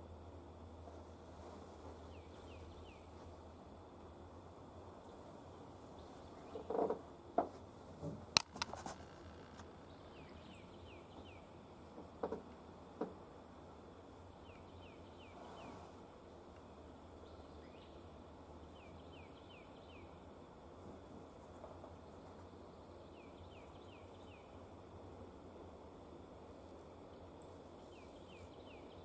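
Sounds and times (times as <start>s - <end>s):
small birds chirping: 1.9s - 3.5s, 5.0s - 6.9s, 9.4s - 11.6s, 14.2s - 15.8s, 22.0s - 24.6s, 27.0s - 29.0s
small knocks and clicks: 6.5s - 9.7s, 11.9s - 13.2s.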